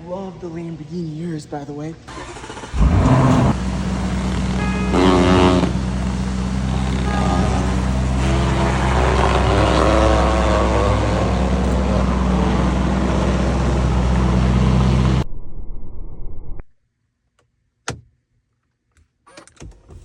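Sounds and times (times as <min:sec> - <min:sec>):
car engine idling: 0:02.1 - 0:15.2.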